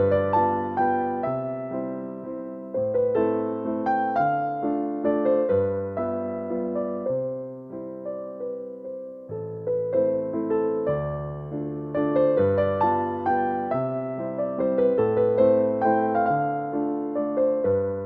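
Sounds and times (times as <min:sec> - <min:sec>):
slow piano melody: 0:00.0 - 0:18.0.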